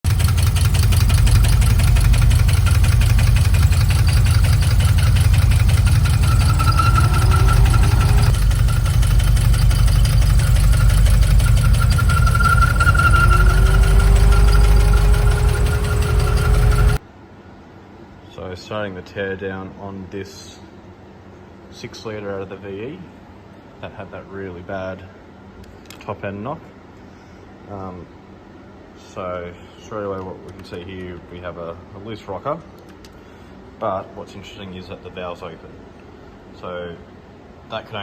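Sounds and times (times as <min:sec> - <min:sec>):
engine running with rapid knock: 0:00.0 - 0:17.0
faint rising whine: 0:05.2 - 0:08.6.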